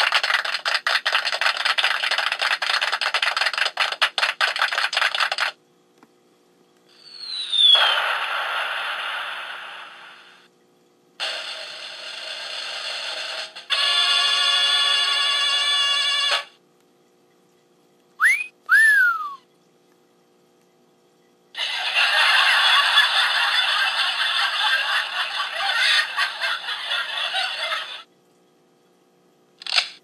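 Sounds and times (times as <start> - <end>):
crackling clicking noise: 0.0 - 6.1
falling whistle into a burst: 7.0 - 8.8, 18.2 - 19.4.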